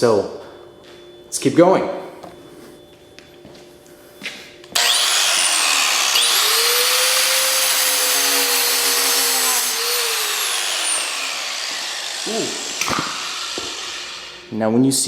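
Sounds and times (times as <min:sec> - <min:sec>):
high motor whine: 0:04.7 - 0:14.7
angle grinder grinding metal: 0:04.8 - 0:14.6.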